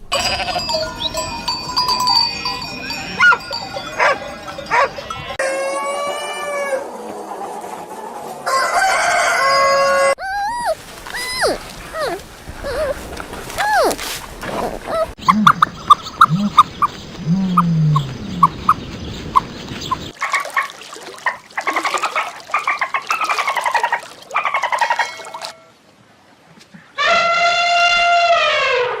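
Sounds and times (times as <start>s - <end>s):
animal calls: 10.0s - 20.1s.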